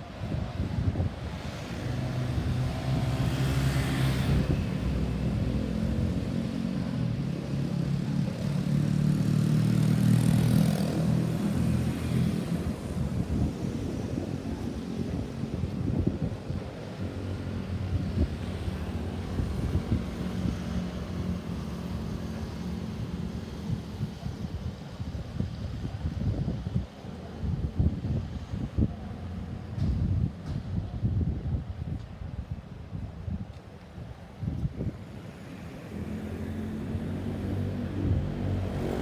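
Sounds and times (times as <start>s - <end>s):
vehicles driving past: 1.3s - 15.6s, 35.0s - 39.0s.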